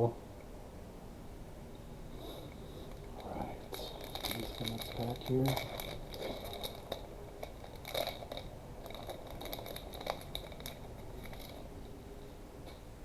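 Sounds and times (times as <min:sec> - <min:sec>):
foil pack crinkling: 0:03.7 - 0:11.8.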